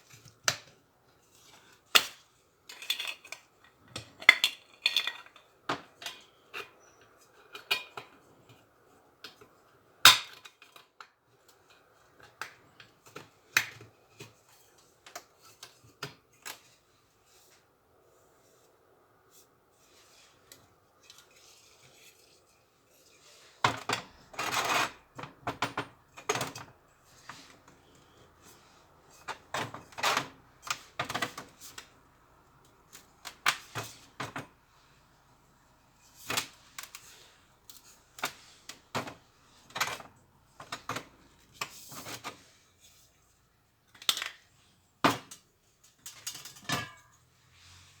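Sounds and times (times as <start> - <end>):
small hard parts clicking and scraping: 1.4 - 8.7, 20.2 - 32.0.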